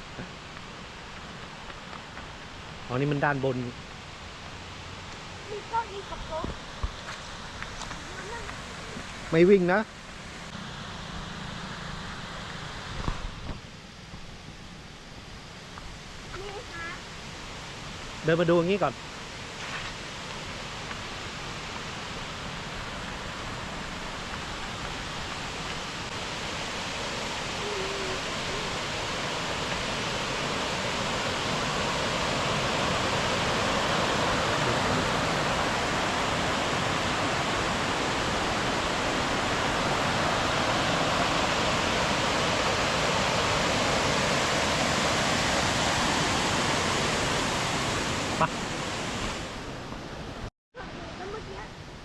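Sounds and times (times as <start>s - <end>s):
waterfall rushing: 7.4s - 9.8s, 16.4s - 19.3s, 20.0s - 49.8s.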